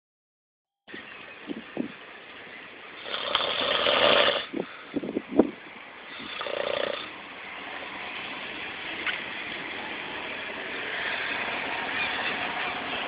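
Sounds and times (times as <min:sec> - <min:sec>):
person snoring: 0:03.0 - 0:04.6, 0:06.1 - 0:07.1.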